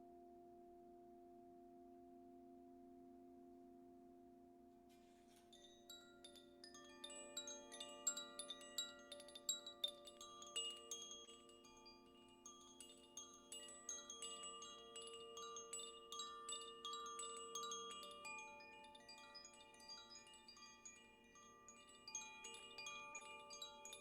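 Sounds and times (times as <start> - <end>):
metal chimes ringing: 5.5 - 24.0.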